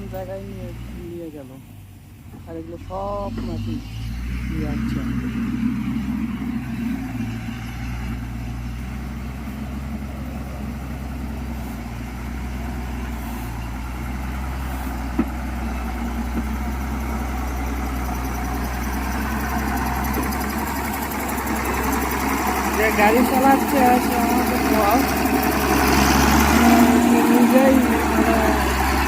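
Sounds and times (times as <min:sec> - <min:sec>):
grader engine running: 0:00.0 - 0:29.0
blade scraping soil: 0:11.4 - 0:12.2, 0:12.8 - 0:15.4.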